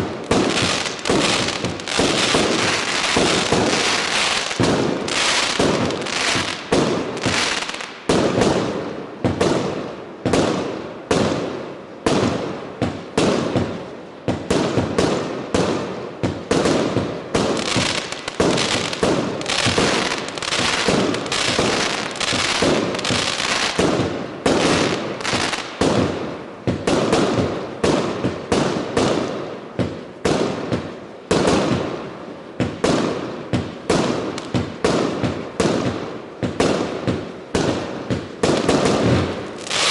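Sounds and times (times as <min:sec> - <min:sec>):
fireworks bangs: 0:00.0 - 0:39.9.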